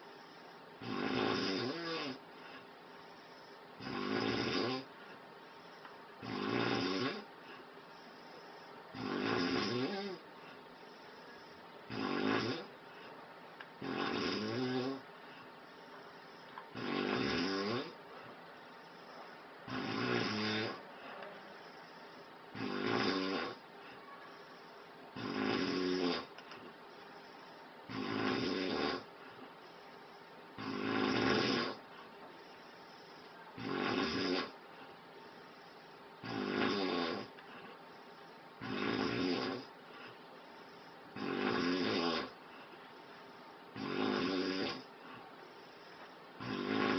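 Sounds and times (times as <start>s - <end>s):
man snoring loudly: 0.0s - 2.2s, 3.3s - 4.9s, 6.2s - 7.3s, 8.2s - 10.2s, 11.4s - 12.7s, 13.8s - 15.0s, 16.3s - 18.0s, 19.7s - 20.8s, 21.6s - 23.6s, 25.2s - 26.3s, 27.9s - 29.1s, 30.6s - 31.8s, 32.8s - 34.6s, 36.2s - 37.3s, 38.6s - 39.7s, 41.2s - 42.4s, 43.8s - 44.9s, 46.4s - 46.9s
quiet breathing: 0.0s - 46.9s.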